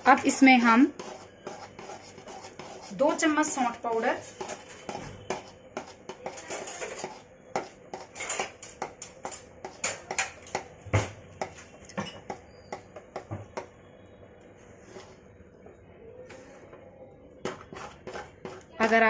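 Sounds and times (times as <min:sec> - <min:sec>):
spoon scraping a metal pan: 0:00.0 - 0:10.7, 0:17.4 - 0:19.0.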